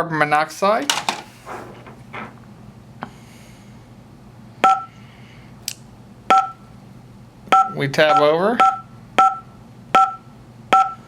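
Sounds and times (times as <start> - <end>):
two-tone keypad beeps: 7.6 - 9.4, 10.0 - 10.2, 10.8 - 11.0.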